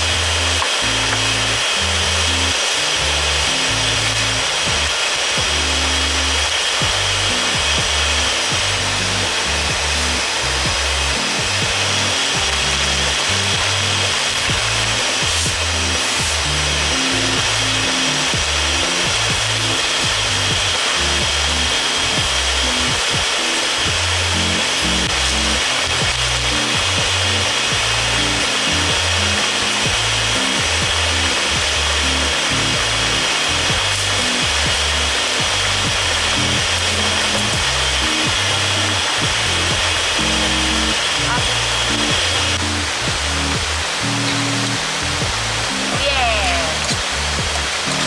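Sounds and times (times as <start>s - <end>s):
background music with bass line: 0.0s - 48.0s
steady hiss: 0.0s - 48.0s.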